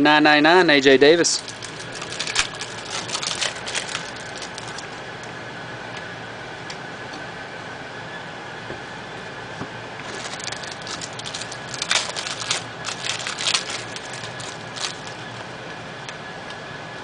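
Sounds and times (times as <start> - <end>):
cards rustling: 1.2 - 5.0, 10.0 - 15.5
foil wrapper crinkling: 1.2 - 5.0, 10.0 - 15.5.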